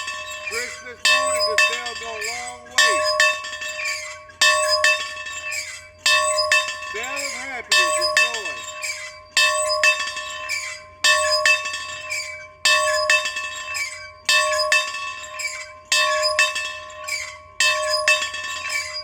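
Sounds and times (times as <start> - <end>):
bell ringing: 0.0 - 10.3.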